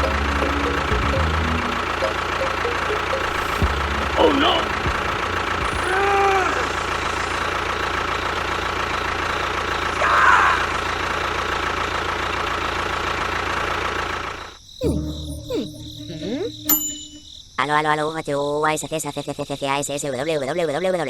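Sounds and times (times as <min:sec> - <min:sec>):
vehicle engine running: 0:00.0 - 0:16.8.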